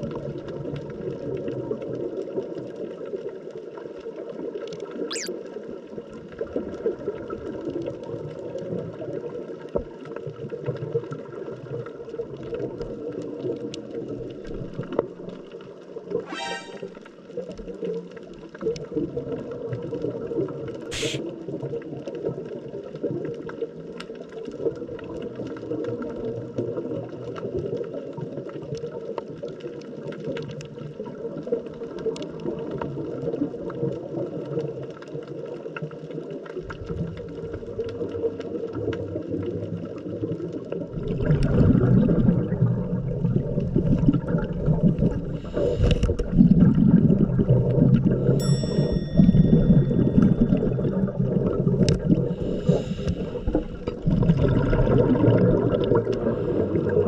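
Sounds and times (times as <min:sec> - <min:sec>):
underwater water noise: 0:00.0 - 0:57.0
exhaled bubbles rushing: 0:37.7 - 0:48.4, 0:49.2 - 0:57.0.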